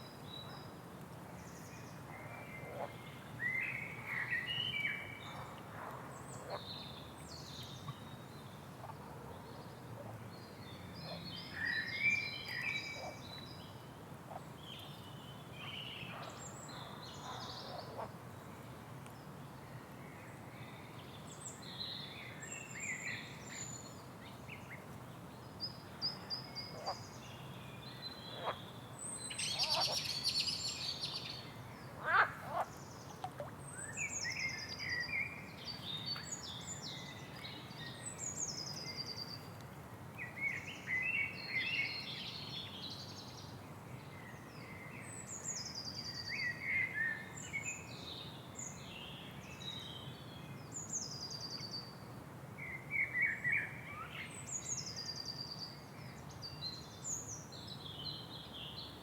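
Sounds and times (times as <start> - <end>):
steady low background noise: 0.0 - 59.0.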